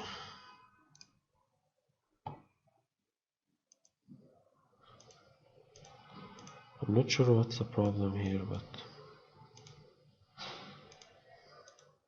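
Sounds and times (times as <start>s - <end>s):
computer mouse clicks: 0.9s - 1.2s, 3.7s - 4.0s, 4.9s - 6.7s, 9.5s - 9.8s, 10.7s - 12.0s.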